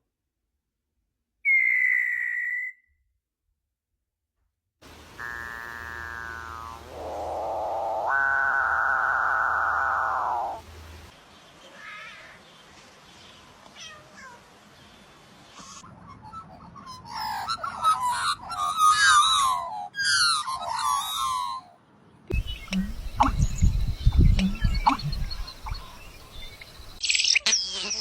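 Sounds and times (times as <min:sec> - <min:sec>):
bird wavering calls: 0:05.2 - 0:10.6, 0:16.2 - 0:28.0
steady pitched tone: 0:22.4 - 0:25.4.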